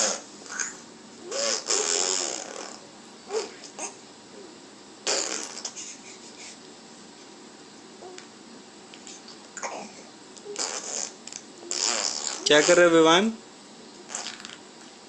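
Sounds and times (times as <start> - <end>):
baby making breathy sounds: 0.0 - 4.0, 9.1 - 10.8
baby cooing: 0.0 - 6.5, 8.0 - 8.3, 9.1 - 12.5.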